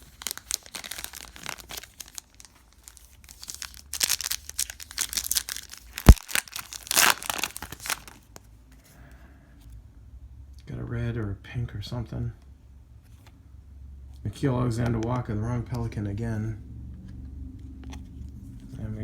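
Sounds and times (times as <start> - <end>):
wrapper crinkling and tearing: 0.0 - 8.4.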